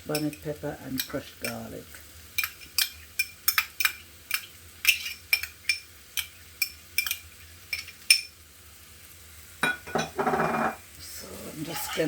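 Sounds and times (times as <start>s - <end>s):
spoon knocking and scraping a pot: 2.4s - 8.3s, 9.6s - 10.8s, 11.7s - 12.0s.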